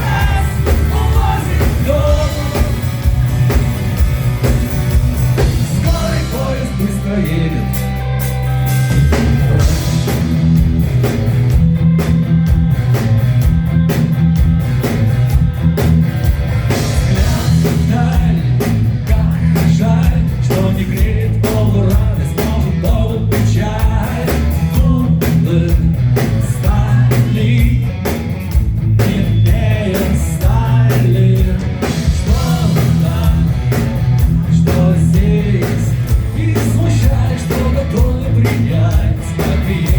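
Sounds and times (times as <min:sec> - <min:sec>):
person singing: 0:00.0 - 0:02.9, 0:05.8 - 0:07.9
rock band playing live: 0:00.0 - 0:39.9.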